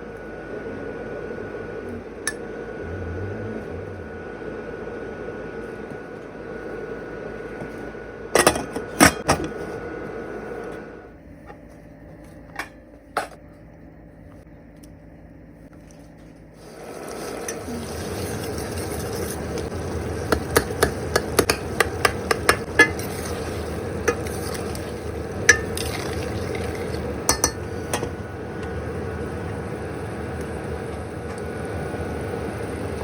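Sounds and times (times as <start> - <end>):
food sizzling in hot oil: 16.6 - 28.1.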